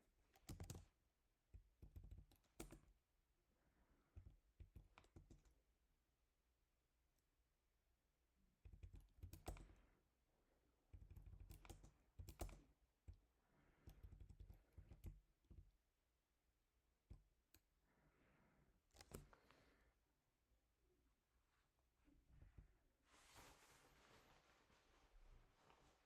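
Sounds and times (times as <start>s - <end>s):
computer keyboard typing: 0.3s - 0.9s, 1.8s - 2.9s, 4.6s - 5.6s, 8.6s - 9.8s, 10.9s - 12.8s, 13.9s - 15.7s, 19.0s - 19.3s.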